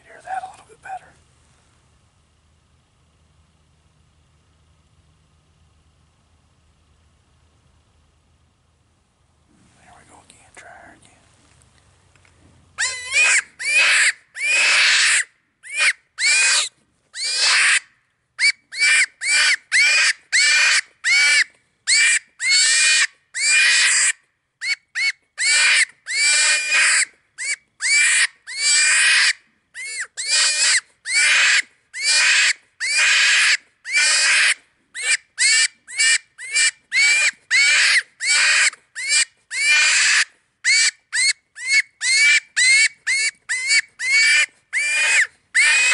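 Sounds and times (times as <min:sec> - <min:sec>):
predator call high squeals: 0:12.8 - 0:17.8, 0:18.4 - 0:45.9.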